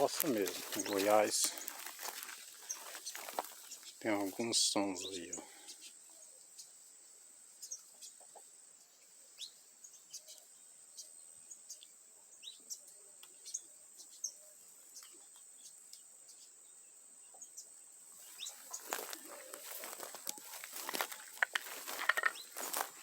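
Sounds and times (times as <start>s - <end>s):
rustling: 0.0s - 4.5s, 18.2s - 23.0s.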